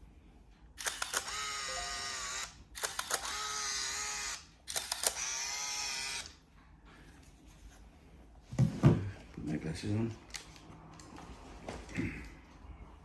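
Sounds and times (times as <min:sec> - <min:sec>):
camera motor winding film: 0:00.8 - 0:06.4.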